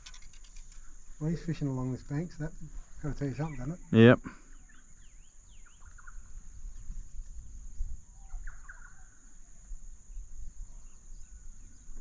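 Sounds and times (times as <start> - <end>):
birds chirping: 0.0 - 7.0
high insect drone: 0.0 - 12.0.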